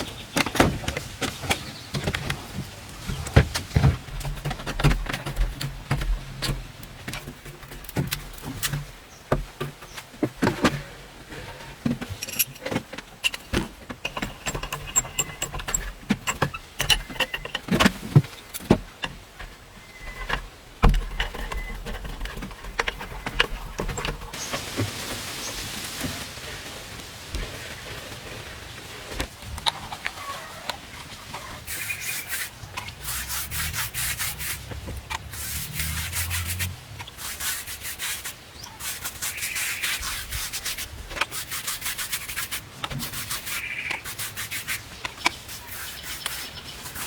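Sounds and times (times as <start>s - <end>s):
building materials clicking and clattering: 0.0s - 25.2s
even hiss: 24.4s - 28.2s, 31.7s - 44.8s.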